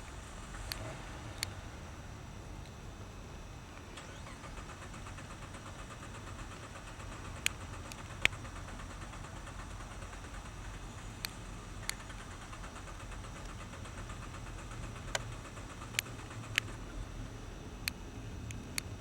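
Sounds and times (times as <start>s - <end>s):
car engine humming: 0.0s - 19.0s
sharp clicks: 3.8s - 17.0s.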